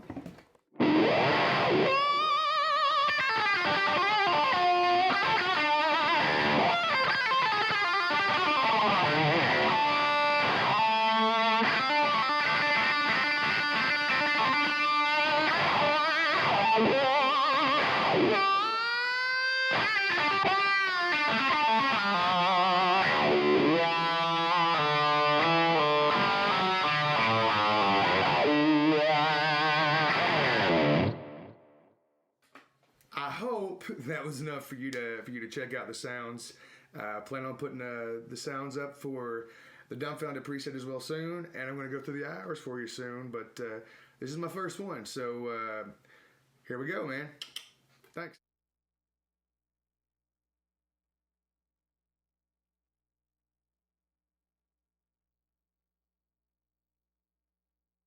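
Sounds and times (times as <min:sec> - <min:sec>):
overdriven electric guitar with wah: 0:00.8 - 0:31.7.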